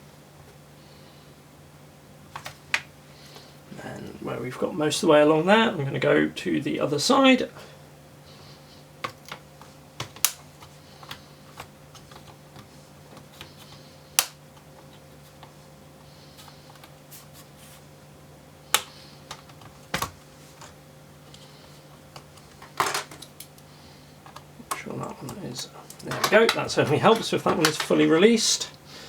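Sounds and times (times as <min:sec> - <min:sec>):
plastic clips snapping: 0:10.0 - 0:12.4, 0:14.2 - 0:14.4.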